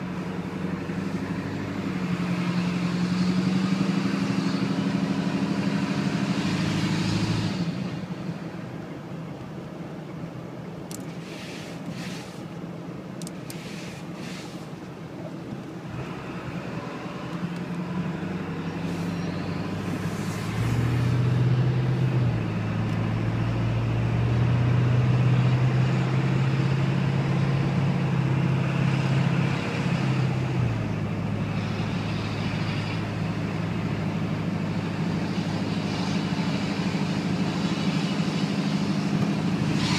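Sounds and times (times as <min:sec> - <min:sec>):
diesel engine running: 0:00.0 - 0:39.9.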